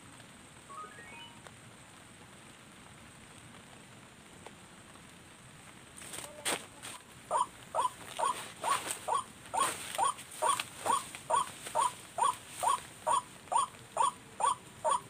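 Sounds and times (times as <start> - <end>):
bird calls through a speaker: 7.3 - 15.0.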